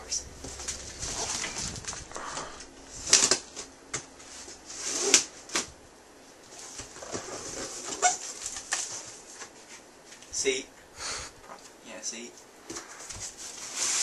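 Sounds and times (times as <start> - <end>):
packaging rustling: 0.4 - 5.7, 6.6 - 9.5.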